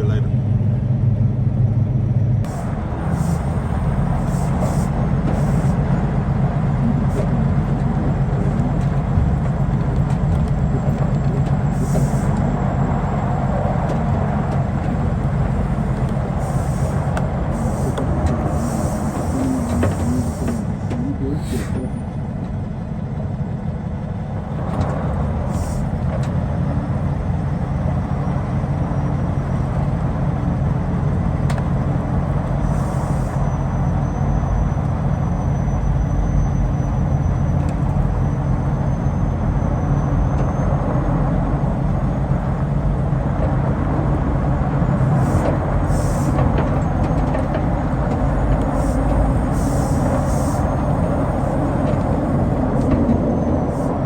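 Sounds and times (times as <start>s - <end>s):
diesel engine running: 0.0s - 54.0s
short hisses: 16.4s - 21.9s.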